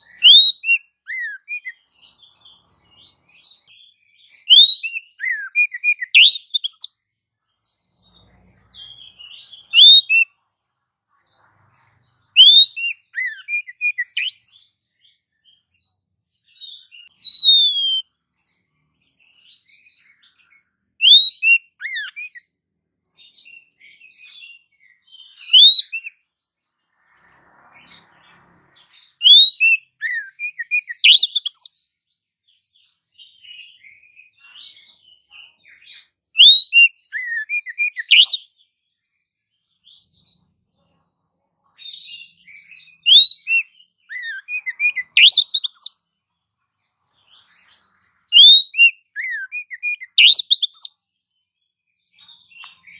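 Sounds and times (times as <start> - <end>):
loud sharp bird chirps: 0.0 - 40.6, 41.7 - 46.2, 46.8 - 52.9
faint background chirping: 0.0 - 52.9.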